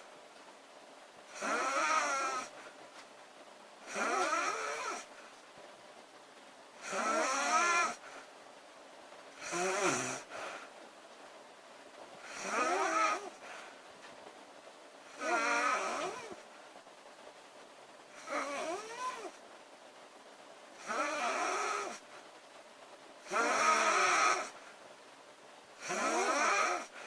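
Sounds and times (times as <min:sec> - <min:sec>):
woman snoring loudly: 0:01.3 - 0:02.5, 0:03.9 - 0:05.1, 0:06.8 - 0:08.0, 0:09.4 - 0:10.5, 0:12.2 - 0:13.4, 0:15.1 - 0:16.4, 0:18.2 - 0:19.4, 0:20.8 - 0:22.0, 0:23.2 - 0:24.6, 0:25.8 - 0:27.0.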